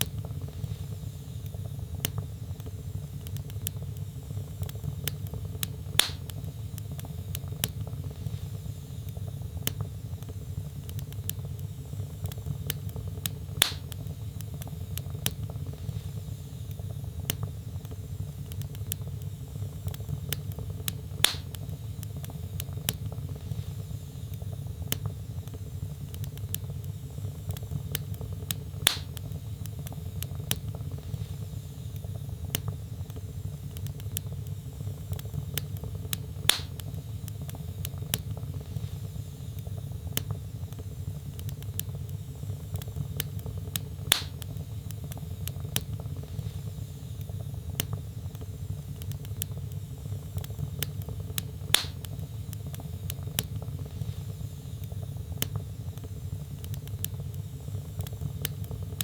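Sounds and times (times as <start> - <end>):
fire crackling: 0.0 - 59.0
loud pop of fire: 6.0 - 6.4, 13.6 - 14.0, 21.2 - 21.7, 28.8 - 29.2, 36.4 - 37.0, 44.0 - 44.5, 51.7 - 52.2.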